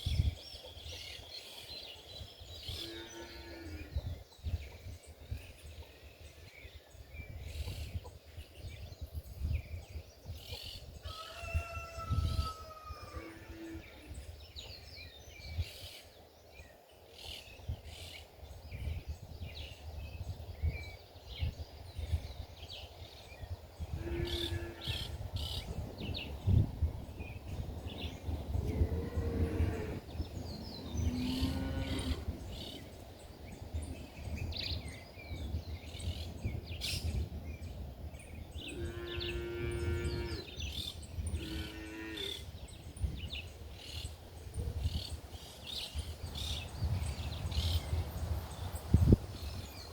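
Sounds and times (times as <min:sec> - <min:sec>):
wind gusting on microphone: 0:00.0 - 0:49.9
small birds chirping: 0:13.2 - 0:49.9.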